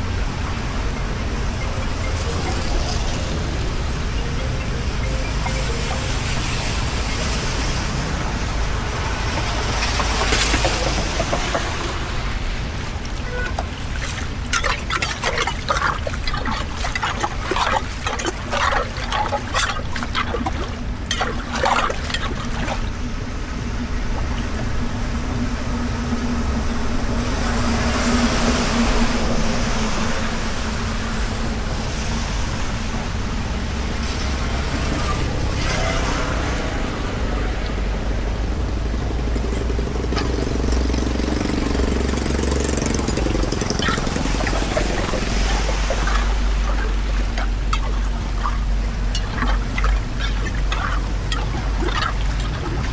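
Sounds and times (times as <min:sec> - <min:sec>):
floodwater pouring into a drain: 0:00.0 - 0:25.2, 0:27.3 - 0:52.9
knocks and clatters: 0:09.0 - 0:22.8.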